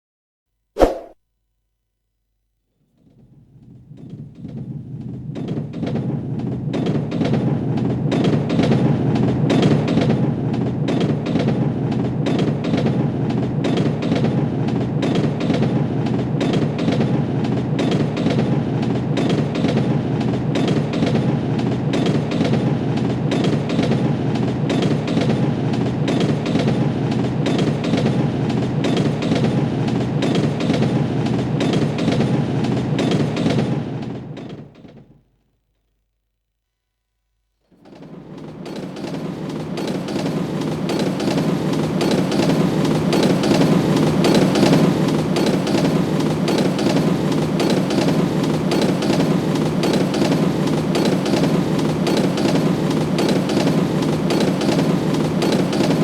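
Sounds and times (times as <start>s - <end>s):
train rumbling on track: 3.9s - 34.7s, 37.9s - 56.0s
wheels clicking on rails: 4.0s - 35.0s, 37.8s - 56.0s.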